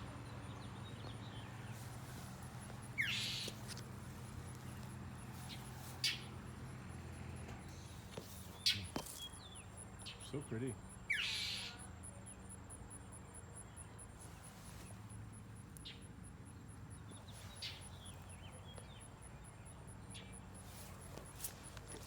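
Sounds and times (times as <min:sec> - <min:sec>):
insect chirping in pulses: 0:02.8 - 0:03.6
bird chirps: 0:02.8 - 0:03.7, 0:05.4 - 0:06.4, 0:07.6 - 0:10.4, 0:11.1 - 0:11.8.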